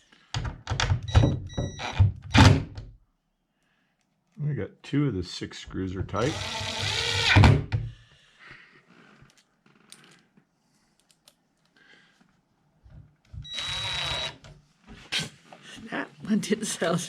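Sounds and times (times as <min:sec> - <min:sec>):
electric drill driving screws: 0:01.8 - 0:02.6, 0:06.2 - 0:07.6, 0:13.4 - 0:14.5.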